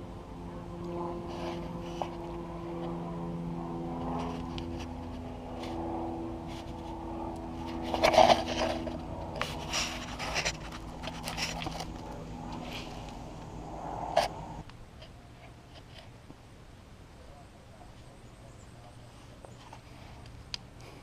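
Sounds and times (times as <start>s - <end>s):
atv engine running: 0.0s - 14.6s.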